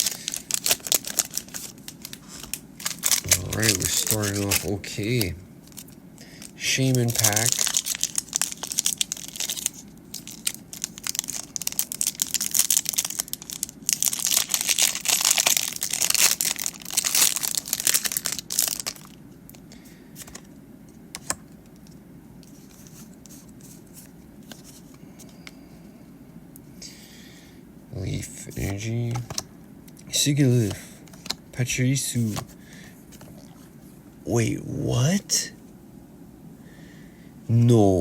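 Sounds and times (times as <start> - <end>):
foil wrapper tearing and crinkling: 0.0 - 19.2.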